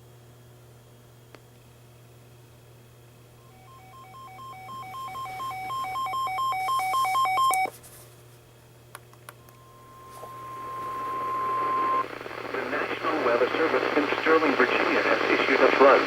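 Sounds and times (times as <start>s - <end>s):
alternating two-tone alarm beeping: 3.4s - 7.7s, 9.5s - 12.0s
steady single-pitch warning tone: 3.4s - 7.7s, 9.4s - 12.8s.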